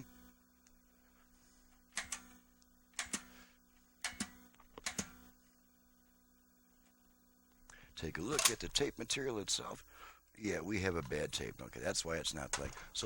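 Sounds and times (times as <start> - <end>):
faint steady hum: 0.0 - 13.0
tape player clicking: 8.2 - 8.7.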